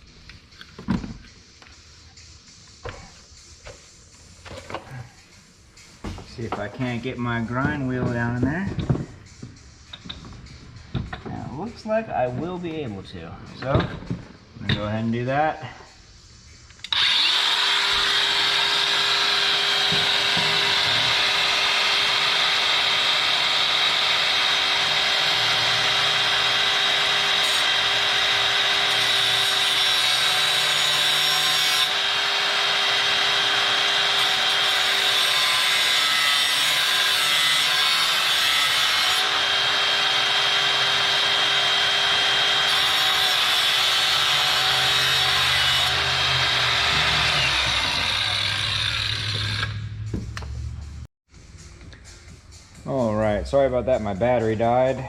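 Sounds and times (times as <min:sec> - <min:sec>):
power grinder whining: 0:16.8 - 0:50.0.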